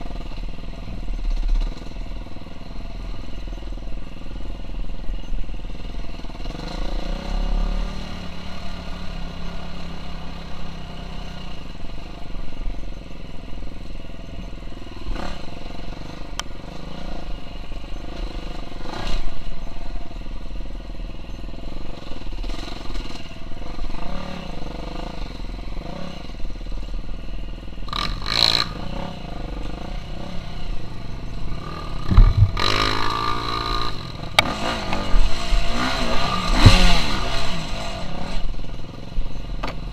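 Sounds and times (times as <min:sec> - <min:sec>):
dirt bike engine revving: 0:05.8 - 0:11.7, 0:15.0 - 0:17.4, 0:27.8 - 0:39.0
knocks: 0:32.1 - 0:32.8.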